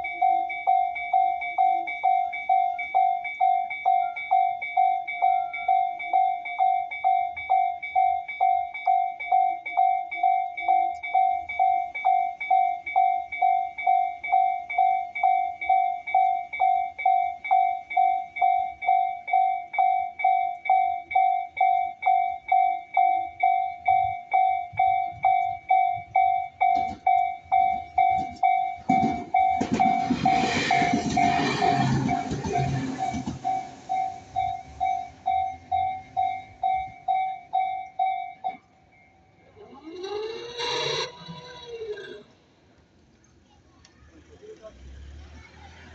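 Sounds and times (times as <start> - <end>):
level-crossing electronic bell: 0.0 - 42.3
train running noise: 22.4 - 38.6.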